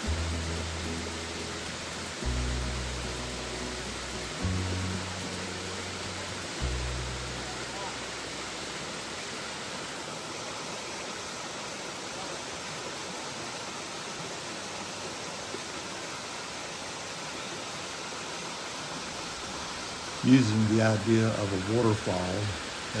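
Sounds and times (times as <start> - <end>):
waterfall rushing onto rocks: 0.0 - 23.0.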